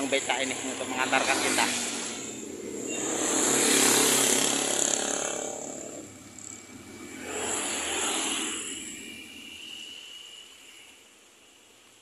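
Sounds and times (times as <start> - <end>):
motor vehicles passing: 0.0 - 9.3.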